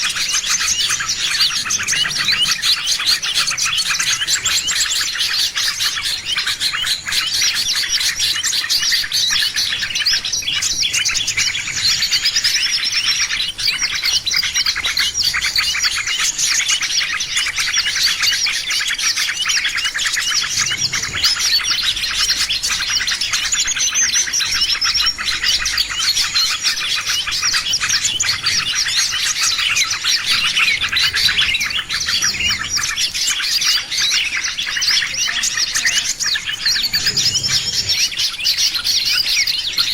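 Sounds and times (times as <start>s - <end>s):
small songbirds chirping: 0.0s - 39.9s.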